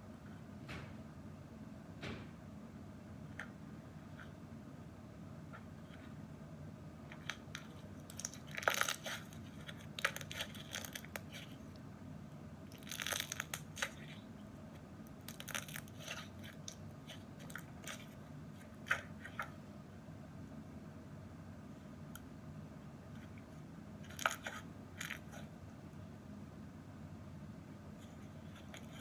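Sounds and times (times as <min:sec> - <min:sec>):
slime crackling and popping: 0:08.1 - 0:11.2, 0:12.7 - 0:14.0, 0:15.2 - 0:16.8.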